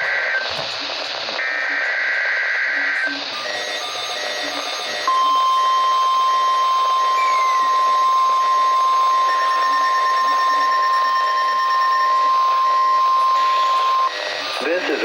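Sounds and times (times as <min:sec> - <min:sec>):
steady warning alarm tone: 0:03.4 - 0:15.0
radio hiss: 0:12.4 - 0:15.0.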